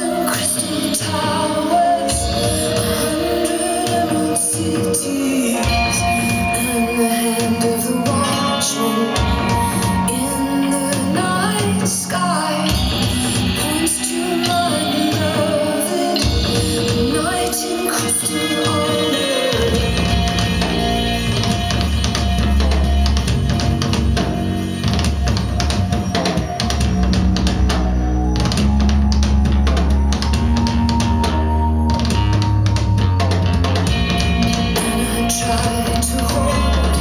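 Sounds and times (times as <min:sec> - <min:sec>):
rock song with drums: 0:00.0 - 0:37.0
heavy bass line: 0:16.2 - 0:37.0.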